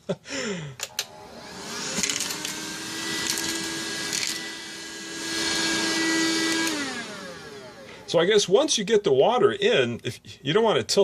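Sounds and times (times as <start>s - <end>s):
sharp clicks: 0.8s - 1.1s
handheld vacuum cleaner running: 0.8s - 8.2s.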